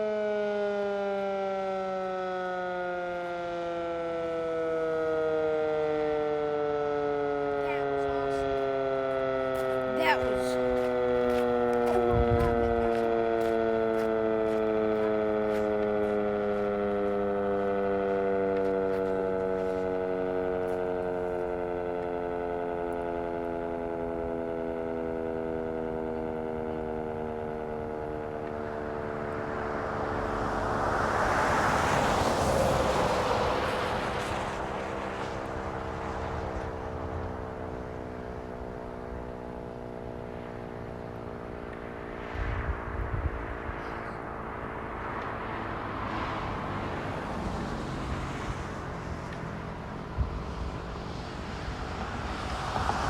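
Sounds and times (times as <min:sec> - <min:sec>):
warning siren winding down: 0:00.0 - 0:53.0
passing vehicle: 0:28.0 - 0:53.0.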